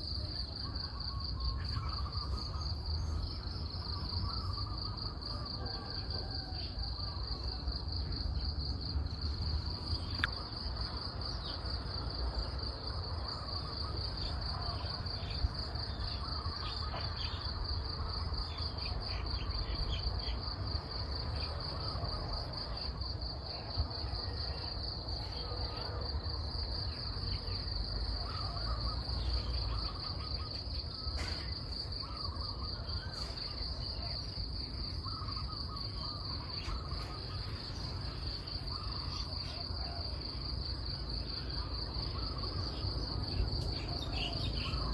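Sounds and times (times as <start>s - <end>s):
faint bird calls: 0.2s - 8.2s, 27.4s - 40.2s.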